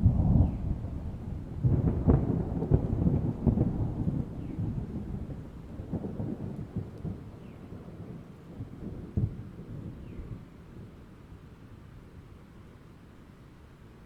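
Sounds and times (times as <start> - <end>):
thunder rumbling: 0.0 - 11.0
rain: 0.0 - 14.0.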